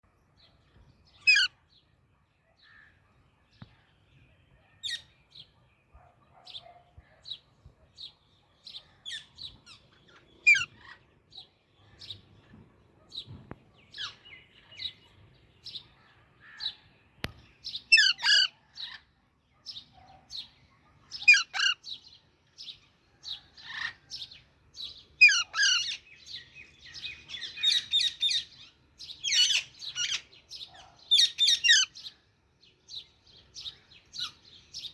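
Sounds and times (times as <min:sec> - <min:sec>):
parakeet harsh squawks: 0:17.9 - 0:18.5, 0:21.3 - 0:21.8, 0:25.2 - 0:26.0.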